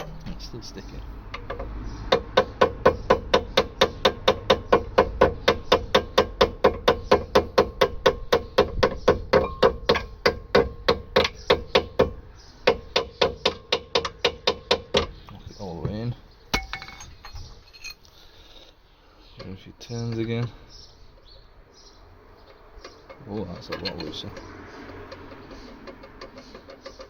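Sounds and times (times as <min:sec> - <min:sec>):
hammer tapping metal: 0:01.3 - 0:15.1.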